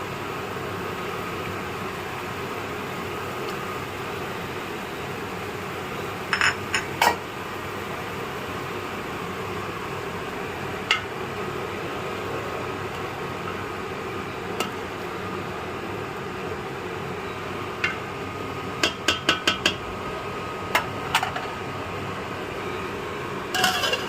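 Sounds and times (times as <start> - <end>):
metal utensils clinking on pot: 6.4 - 7.2, 23.6 - 24.0.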